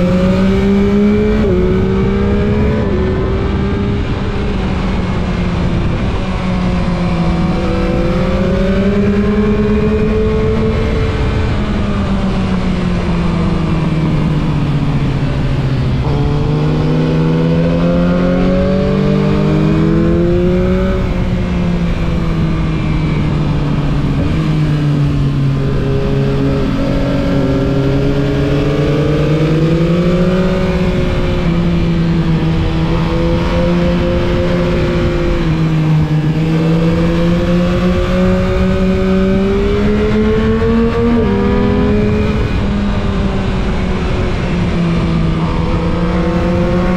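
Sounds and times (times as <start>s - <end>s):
motorcycle engine accelerating: 0.0s - 46.9s
wind noise: 0.0s - 46.9s.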